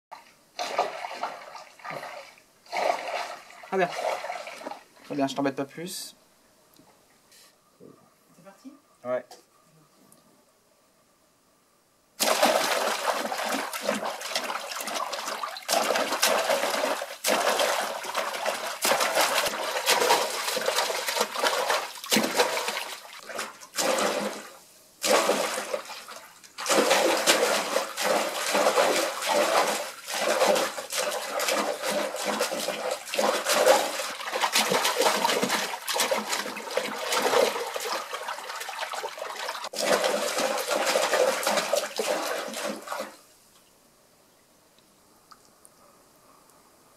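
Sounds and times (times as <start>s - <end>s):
hands splashing water: 0.2s - 4.9s, 12.2s - 43.2s.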